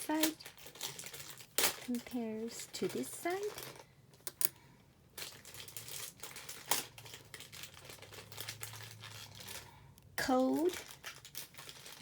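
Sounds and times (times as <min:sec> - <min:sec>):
packaging crinkling: 0:00.1 - 0:02.6, 0:05.2 - 0:12.0.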